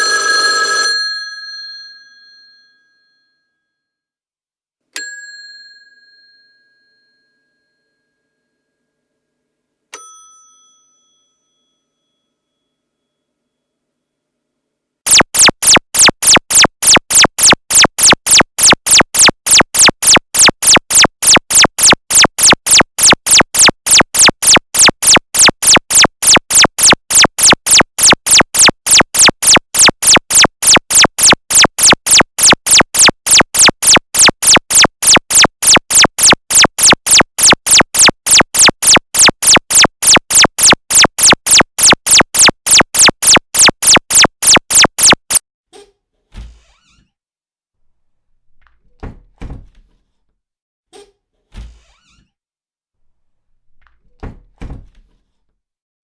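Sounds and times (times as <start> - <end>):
electronic synth pulse: 15.1 - 45.4.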